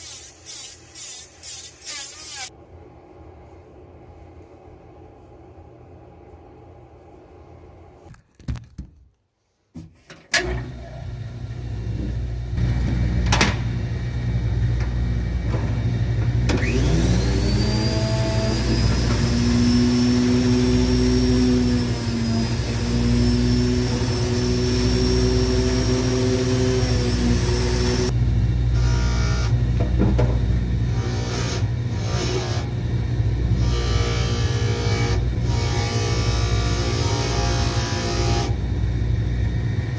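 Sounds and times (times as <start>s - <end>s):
machine low drone: 10.6s - 39.9s.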